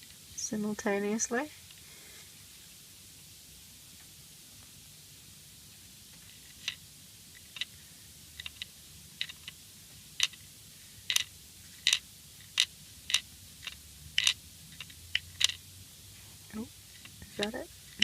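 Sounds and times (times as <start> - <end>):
metal nut clicking inside housing: 11.1 - 15.6.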